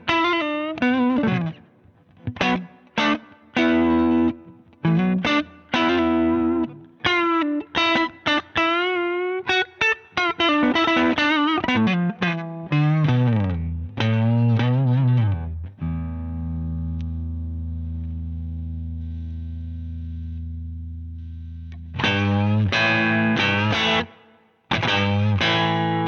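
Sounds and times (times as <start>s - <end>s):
overdriven electric guitar: 0.0s - 26.0s.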